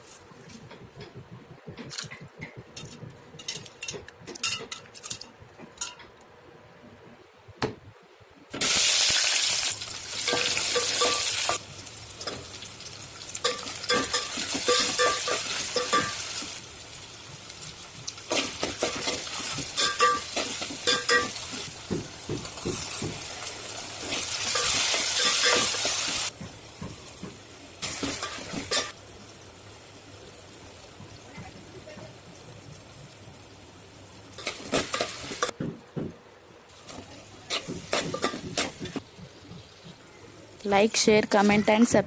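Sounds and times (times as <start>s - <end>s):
food sizzling in a pan: 8.6s - 35.5s, 36.7s - 39.8s.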